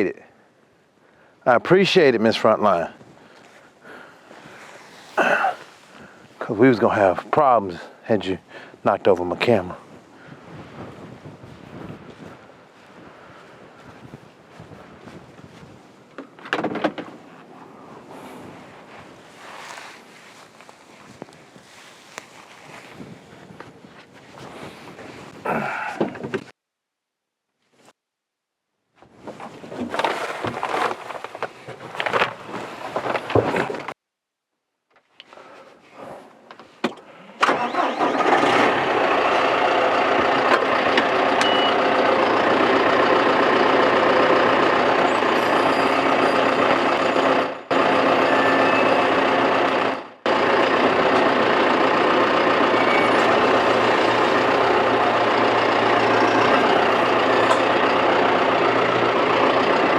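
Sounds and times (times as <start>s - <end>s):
clunks and handling noises: 16.1s - 17.5s, 29.0s - 34.0s
tractor diesel engine running: 37.4s - 59.9s.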